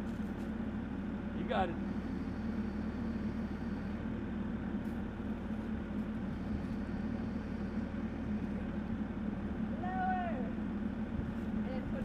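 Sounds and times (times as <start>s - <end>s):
excavator engine droning: 0.0s - 12.0s.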